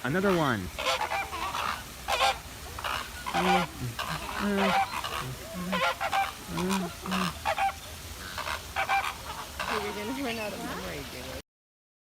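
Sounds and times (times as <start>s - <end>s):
flamingos honking: 0.0s - 11.4s.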